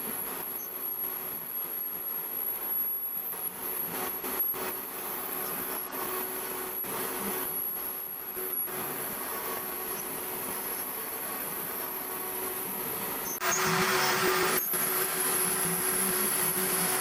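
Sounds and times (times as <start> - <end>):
router spindle whine: 0.0 - 17.0
bit cutting wood hiss: 8.5 - 17.0.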